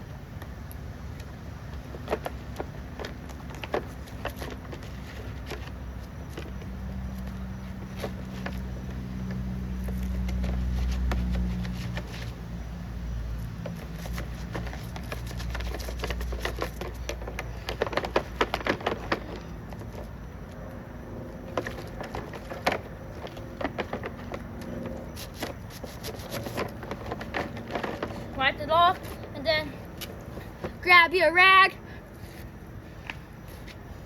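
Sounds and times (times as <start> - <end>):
vehicle engine humming: 0.0 - 34.0.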